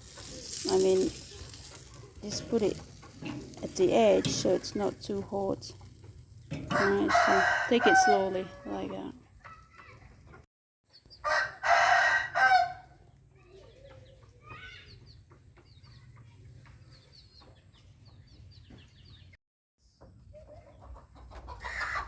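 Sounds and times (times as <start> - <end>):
rooster crowing: 6.7 - 8.9, 11.2 - 12.9.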